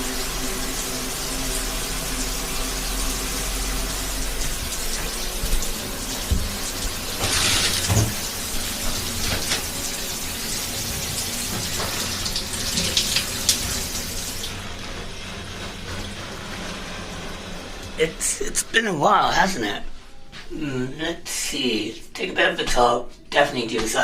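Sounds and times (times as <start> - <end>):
water running and splashing: 0.0 - 18.4.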